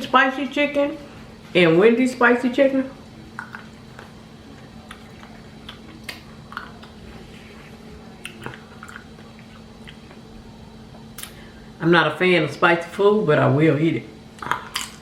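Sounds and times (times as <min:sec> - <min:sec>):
faint steady hum: 0:00.0 - 0:15.0
person chewing food: 0:03.3 - 0:10.3.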